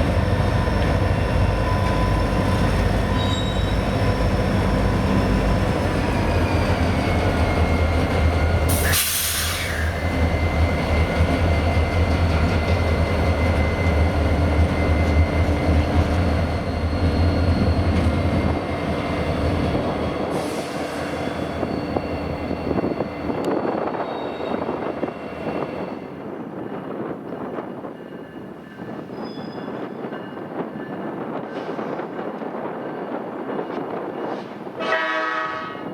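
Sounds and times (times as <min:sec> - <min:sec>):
freight train rumbling past: 0:00.0 - 0:35.9
wheel squeal: 0:03.1 - 0:04.0
air brake hiss: 0:08.7 - 0:10.0, 0:20.3 - 0:21.1.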